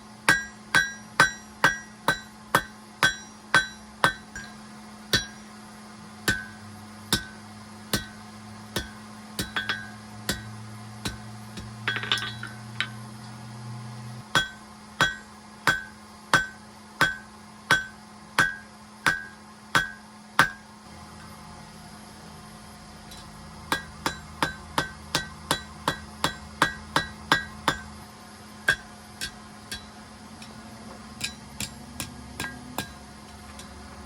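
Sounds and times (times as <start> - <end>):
steady low hum: 0.0 - 34.0
hammer ringing on anvil: 0.3 - 5.5, 6.3 - 8.2, 8.8 - 12.6, 14.3 - 20.6, 23.7 - 27.9, 28.7 - 29.9, 31.2 - 33.0.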